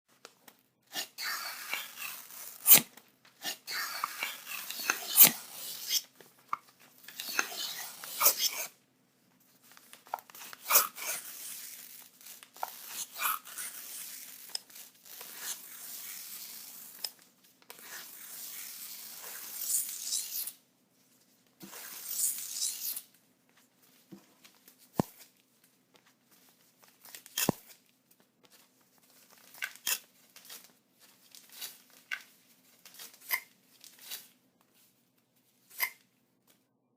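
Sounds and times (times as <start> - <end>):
paper tearing: 0.9 - 6.1, 7.1 - 8.7, 9.8 - 17.1, 21.6 - 23.1.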